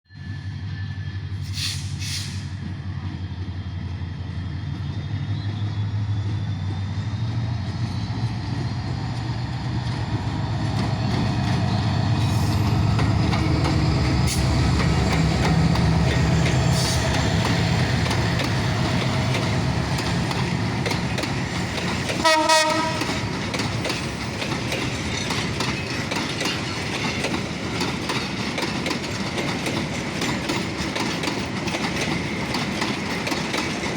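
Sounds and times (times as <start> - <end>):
locomotive engine drone: 0.1 - 28.4
train wheels clattering: 4.6 - 33.9
locomotive horn blast: 22.2 - 23.2.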